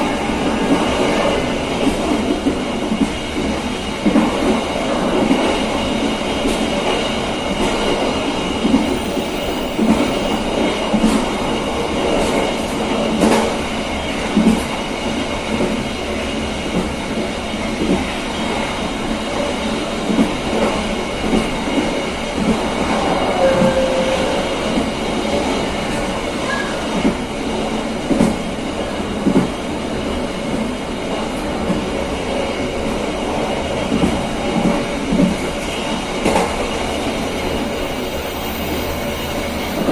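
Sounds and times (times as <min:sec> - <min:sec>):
train wheel squeal: 0:00.0 - 0:00.4, 0:07.0 - 0:11.7, 0:22.8 - 0:27.0, 0:36.4 - 0:39.9
track knocks and clacks: 0:00.0 - 0:01.2, 0:07.6 - 0:11.6, 0:36.2 - 0:39.9
train wheels rumbling on rail: 0:00.0 - 0:39.9.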